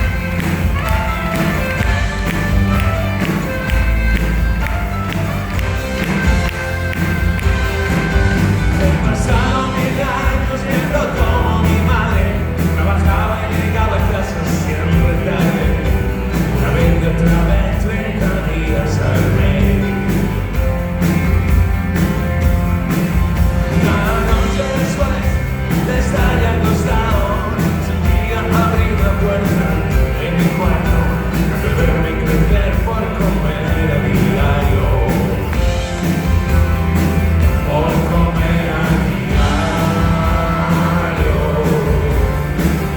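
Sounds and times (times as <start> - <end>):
rock band playing: 0.0 - 42.9
person singing: 5.1 - 20.4, 23.6 - 36.4, 37.4 - 42.9.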